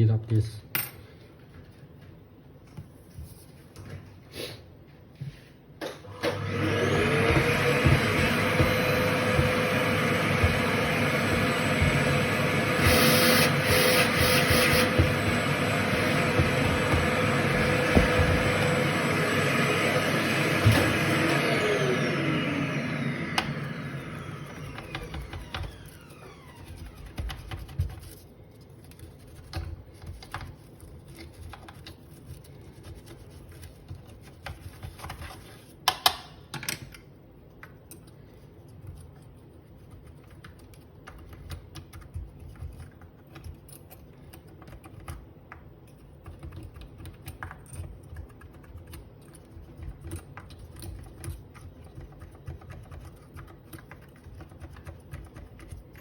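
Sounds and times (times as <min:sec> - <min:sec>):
motor whine spinning down: 0:06.2 - 0:27.0.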